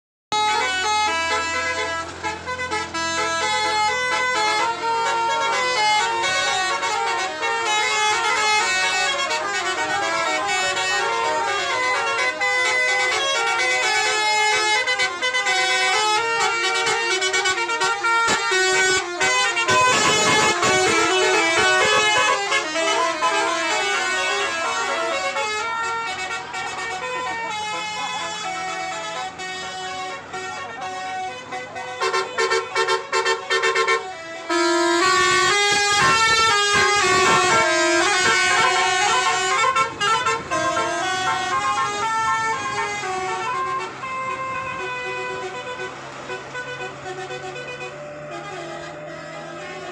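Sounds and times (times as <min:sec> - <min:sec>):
multi-tone air horns: 0:00.3 - 0:49.9.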